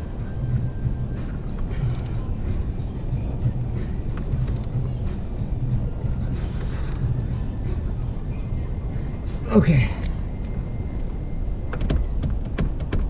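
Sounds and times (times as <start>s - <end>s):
steady low rumble: 0.0s - 13.0s
light clicks of parts handled: 1.5s - 2.2s, 4.1s - 4.8s, 6.4s - 7.3s.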